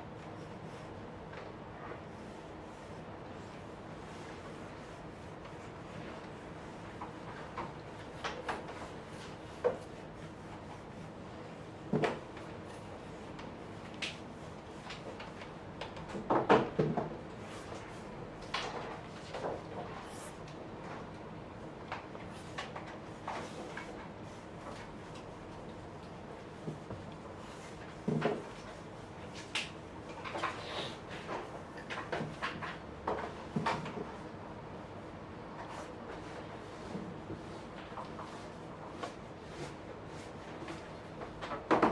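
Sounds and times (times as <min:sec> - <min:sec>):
pencil strokes scraping paper: 0:02.0 - 0:15.3.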